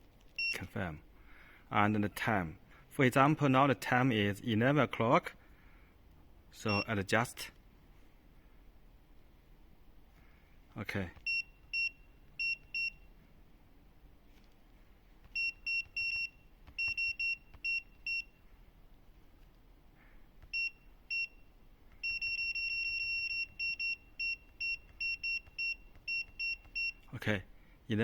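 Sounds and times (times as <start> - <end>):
control panel button beeps: 15.3 - 18.3, 22.0 - 27.1.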